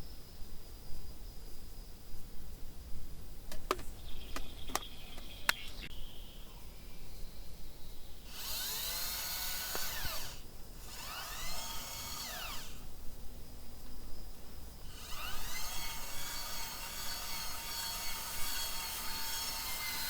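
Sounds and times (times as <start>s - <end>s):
small electric motor whirring: 8.2s - 12.9s, 14.8s - 20.0s
sharp clicks: 8.3s - 10.4s.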